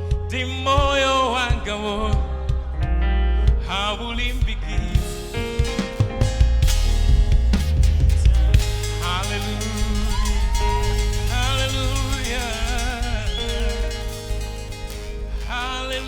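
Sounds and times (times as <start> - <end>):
bass and keyboard chords: 0.0 - 16.0
wordless wavering vocals: 8.2 - 16.0.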